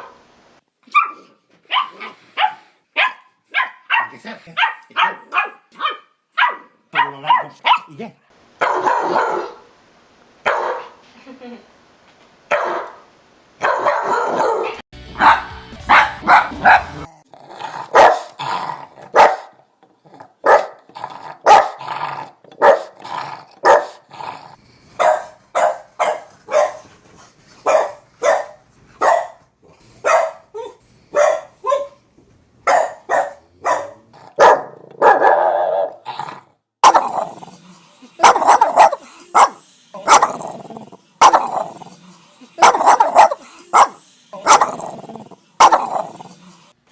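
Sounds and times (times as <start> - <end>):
dog barking: 0.0 - 0.2, 0.9 - 7.9, 8.6 - 9.7, 10.4 - 11.0, 12.5 - 17.1, 17.9 - 18.3, 19.1 - 19.6, 20.4 - 20.8, 21.4 - 21.8, 22.6 - 23.0, 23.6 - 24.0, 25.0 - 26.8, 27.6 - 29.4, 30.0 - 32.0, 32.6 - 36.0, 36.8 - 37.4, 38.2 - 40.4, 41.2 - 41.8, 42.6 - 44.8, 45.6 - 46.2.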